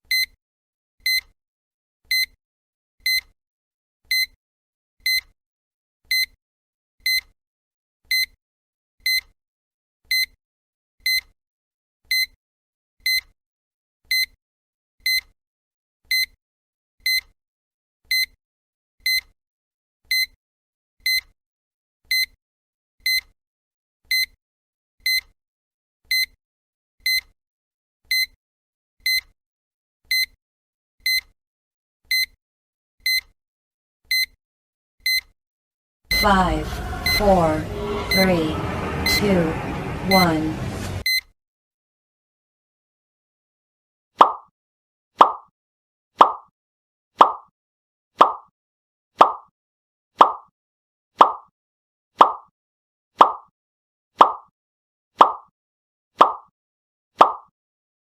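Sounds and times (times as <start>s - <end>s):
countdown timer beeps: 36.1s - 40.4s.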